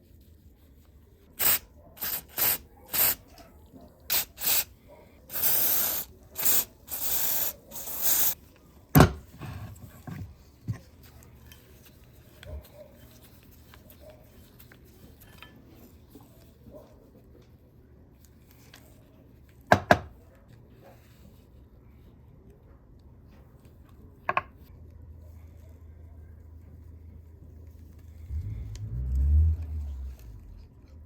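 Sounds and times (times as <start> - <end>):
aerosol spray can hissing: 1.4 - 3.2, 4.1 - 4.7, 5.3 - 8.4.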